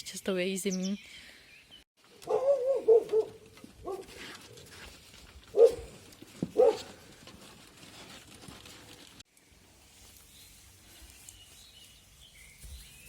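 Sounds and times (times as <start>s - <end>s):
dog barking and whining: 2.2s - 4.2s, 5.5s - 6.0s, 6.6s - 6.9s.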